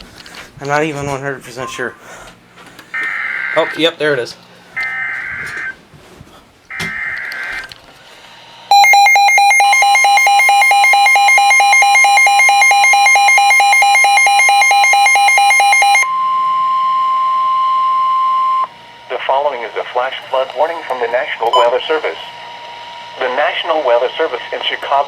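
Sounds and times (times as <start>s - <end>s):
steady warning tone: 1.5s - 2.1s, 3.0s - 5.8s, 6.7s - 7.8s, 8.7s - 25.0s
rapid beeping alarm: 3.0s - 4.2s, 4.8s - 5.8s, 6.7s - 7.7s, 8.7s - 18.8s, 21.1s - 22.3s
warbling data tones: 8.7s - 18.7s, 21.5s - 22.1s.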